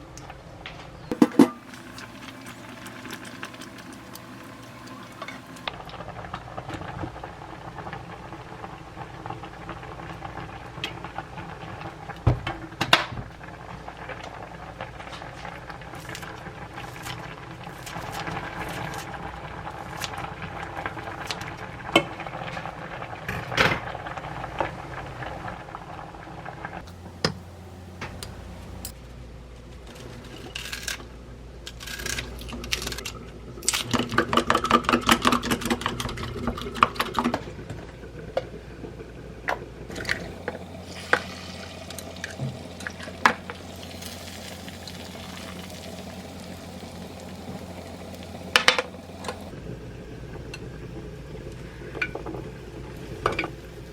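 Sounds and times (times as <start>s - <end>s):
low steady hum: 1.1s - 7.7s, 26.8s - 30.4s, 37.1s - 53.9s.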